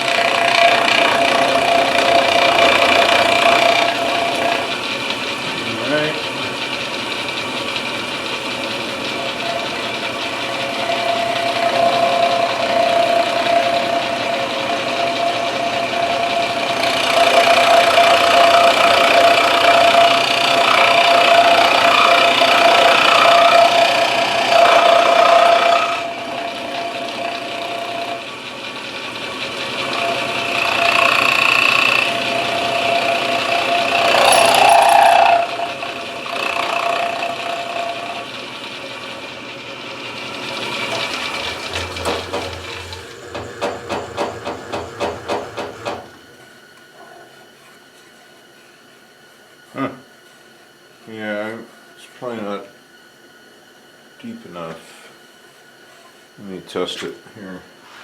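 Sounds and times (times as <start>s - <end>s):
milling machine running: 0.0s - 47.2s
cutter biting into wood: 33.1s - 37.7s.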